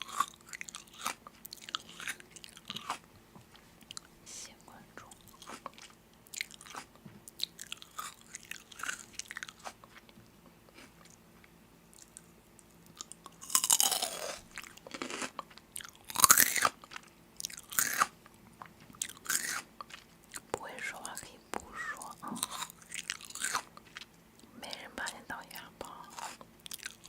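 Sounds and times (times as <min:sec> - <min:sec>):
chewing crisp food: 0:00.0 - 0:04.1, 0:05.1 - 0:11.2, 0:11.9 - 0:27.0.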